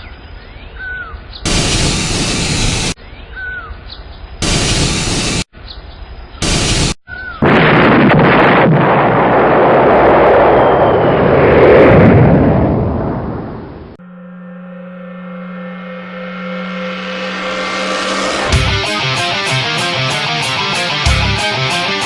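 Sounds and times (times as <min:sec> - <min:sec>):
bird chirping: 0:00.0 - 0:01.5, 0:03.0 - 0:04.4, 0:05.6 - 0:06.4
rocket roar: 0:06.4 - 0:14.0
loud explosive roar: 0:06.4 - 0:19.4.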